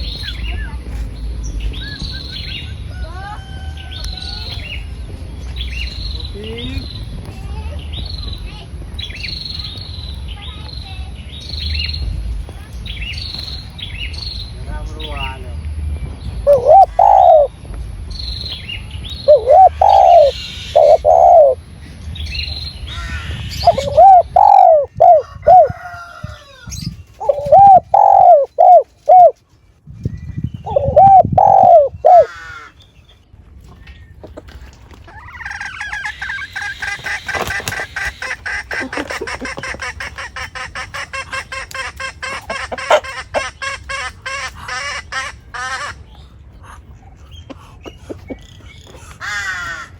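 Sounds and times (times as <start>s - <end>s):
bird calls: 16.2s - 17.5s, 18.1s - 29.4s, 30.1s - 49.9s
bird chatter of rapid notes: 18.5s - 21.6s, 27.1s - 29.4s.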